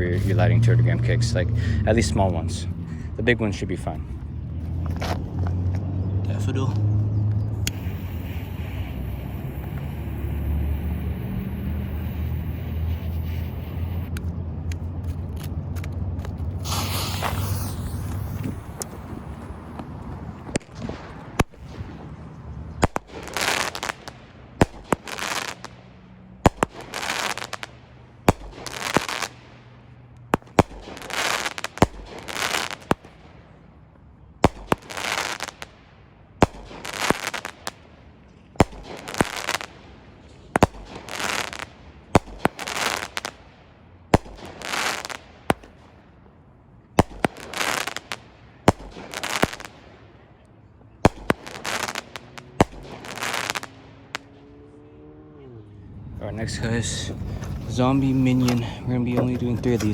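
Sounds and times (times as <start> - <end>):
firework launch pops: 7.6 - 10.4, 16.2 - 22.0, 22.8 - 25.7, 26.4 - 27.7, 40.5 - 43.4, 44.1 - 45.9, 47.0 - 49.8, 51.0 - 54.3
firework crackling bursts: 7.6 - 14.2, 16.5 - 22.1, 22.8 - 29.6, 30.3 - 33.3, 34.4 - 35.8, 36.4 - 37.9, 38.6 - 39.9, 40.5 - 43.5, 44.1 - 45.9, 47.0 - 50.0, 51.0 - 54.3.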